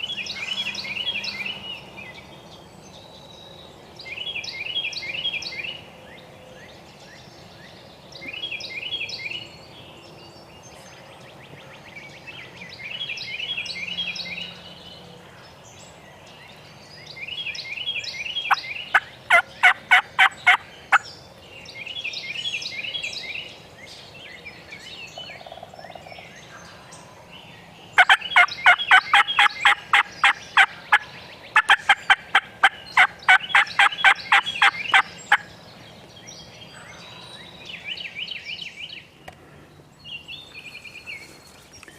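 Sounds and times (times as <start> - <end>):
turkey gobbling: 18.9 - 21.0, 28.0 - 31.0, 31.6 - 35.4.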